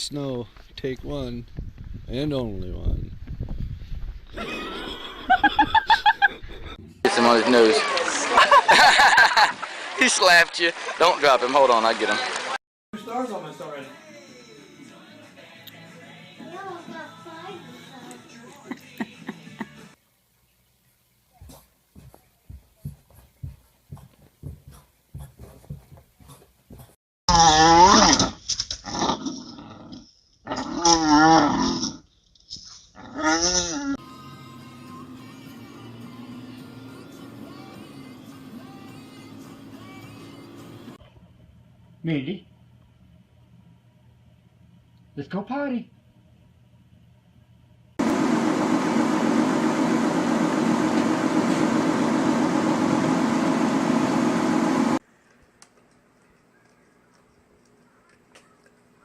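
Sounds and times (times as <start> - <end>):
loud whooshing mechanical noise: 48.0 - 55.0.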